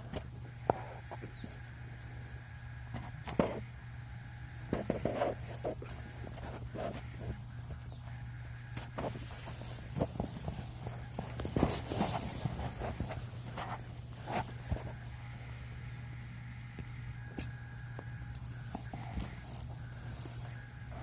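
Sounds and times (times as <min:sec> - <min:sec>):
steady low hum: 0:00.0 - 0:21.0
small bell jingling: 0:00.2 - 0:07.3, 0:08.3 - 0:15.6, 0:17.4 - 0:21.0.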